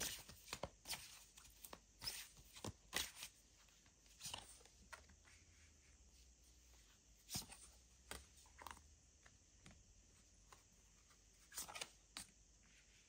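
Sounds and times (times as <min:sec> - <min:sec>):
cards slapping and swishing: 0:00.0 - 0:05.2, 0:07.2 - 0:08.8, 0:10.4 - 0:12.3.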